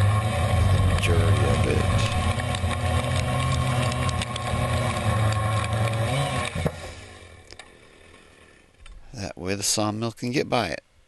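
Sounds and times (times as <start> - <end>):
small gasoline engine running: 0.0 - 8.8.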